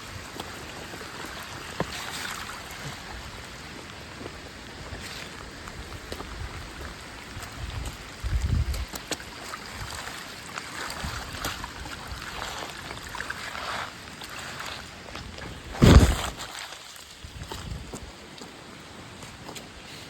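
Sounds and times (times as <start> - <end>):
steady rain: 0.0 - 16.4
drips and patters: 0.0 - 18.6
wind buffeting microphone: 4.7 - 9.0, 17.2 - 18.1.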